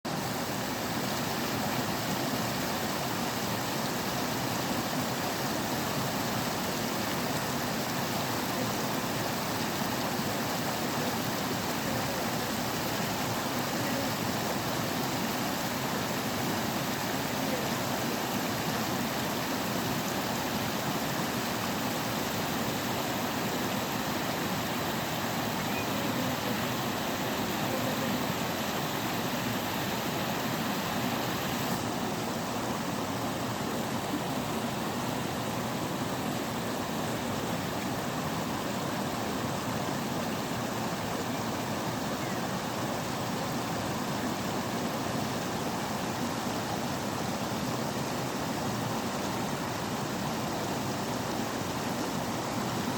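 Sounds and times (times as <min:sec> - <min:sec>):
waterfall rushing: 0:00.1 - 0:52.9.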